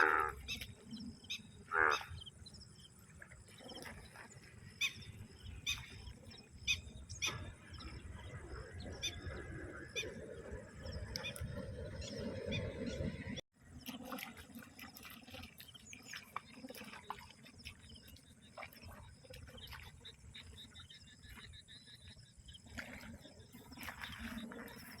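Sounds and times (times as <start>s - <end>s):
frogs croaking: 0.0s - 2.9s.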